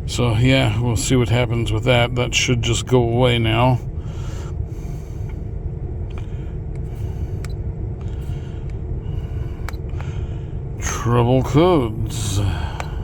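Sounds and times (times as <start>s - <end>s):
truck engine and road rumble: 0.0s - 13.0s
faint clicks: 9.6s - 10.2s, 12.5s - 13.0s.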